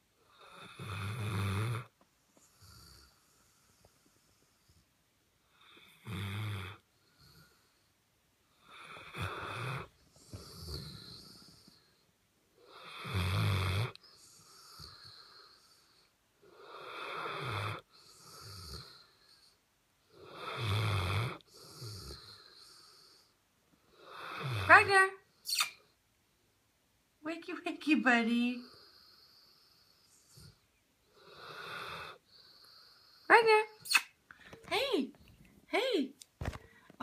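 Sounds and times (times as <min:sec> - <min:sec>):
pet snoring: 0:00.2 - 0:04.8, 0:05.5 - 0:07.8, 0:08.6 - 0:12.0, 0:12.6 - 0:23.3, 0:23.9 - 0:24.9, 0:28.6 - 0:33.4.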